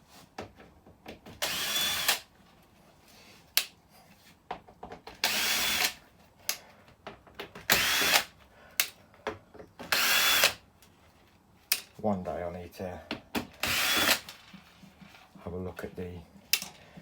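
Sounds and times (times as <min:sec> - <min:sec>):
screws clicking: 0:07.7 - 0:08.9, 0:09.9 - 0:10.6, 0:13.6 - 0:14.4.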